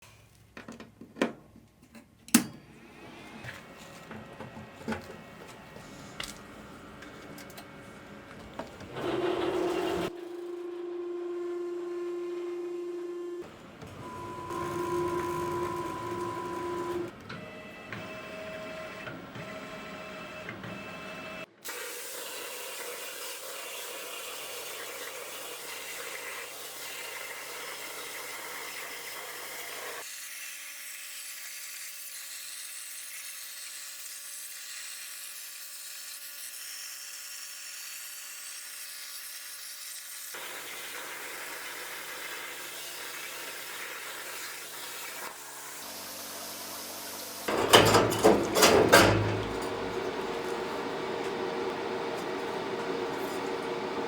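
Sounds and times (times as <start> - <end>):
whining machine tones: 8.9 - 18.5.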